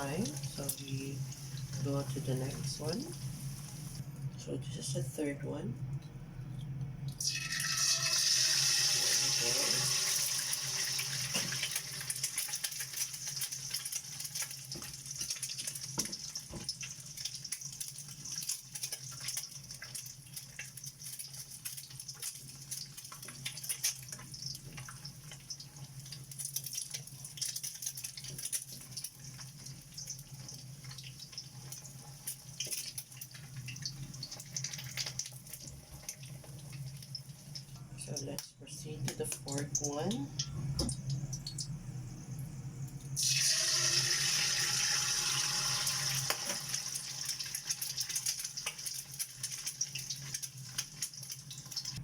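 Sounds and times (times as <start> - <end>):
egg sizzling in hot oil: 0.0 - 4.1, 7.1 - 37.8, 40.4 - 52.0
steady low hum: 37.8 - 43.2.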